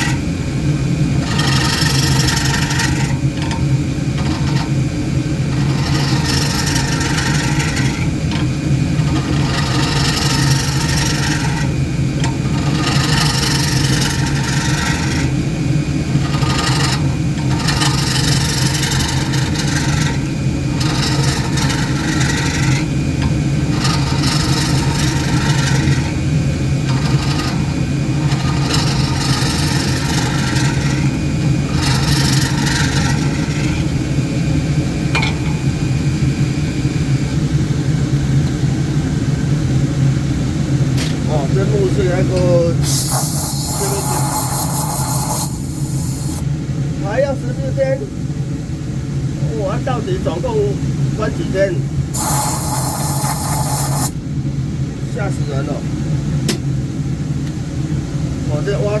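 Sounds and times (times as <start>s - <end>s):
tool scraping spinning wood: 1.1s - 23.0s, 23.6s - 34.0s, 42.2s - 46.5s, 52.2s - 54.2s
wood lathe motor humming: 1.2s - 3.2s, 5.4s - 8.2s, 9.0s - 11.7s, 12.4s - 15.5s, 16.1s - 22.9s, 26.8s - 33.8s, 42.8s - 46.5s.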